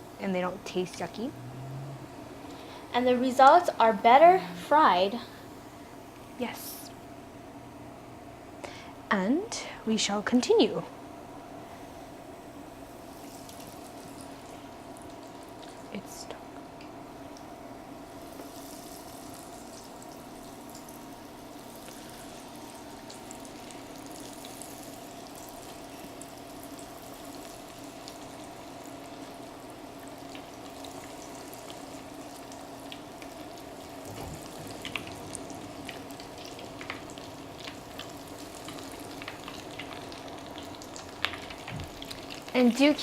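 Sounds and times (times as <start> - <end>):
low steady hum: 0.0 - 43.0
deep-frying oil sizzling: 12.1 - 16.3, 17.2 - 43.0.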